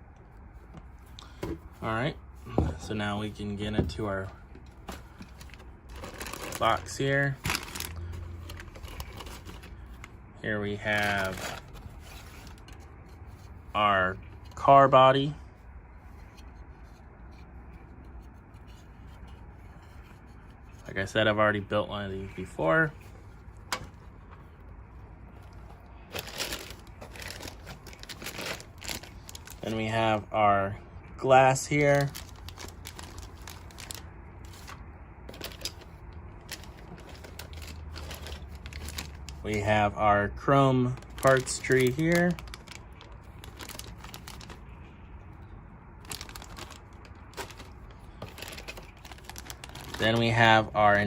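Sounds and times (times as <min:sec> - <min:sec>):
plastic packaging crinkling: 0:04.8 - 0:12.9, 0:26.1 - 0:30.1, 0:31.8 - 0:39.8, 0:40.8 - 0:44.6, 0:46.0 - 0:50.7.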